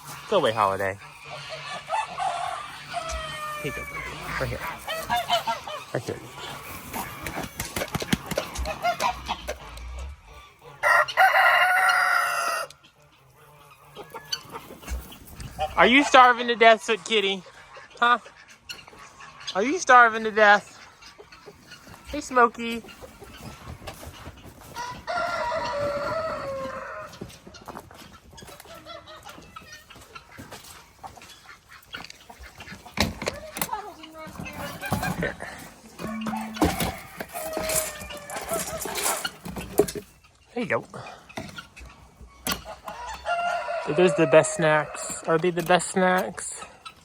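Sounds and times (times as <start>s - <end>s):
chicken clucking: 0.0s - 47.0s
rooster crowing: 1.8s - 4.2s, 10.8s - 12.7s, 24.8s - 27.1s, 36.0s - 38.8s, 42.9s - 45.1s
rustling: 21.4s - 40.6s.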